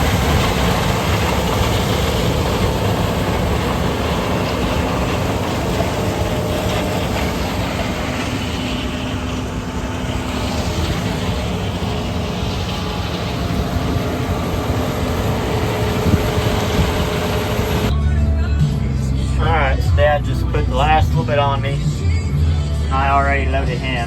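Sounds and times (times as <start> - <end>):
heavy machinery engine rumbling: 0.0 - 24.0.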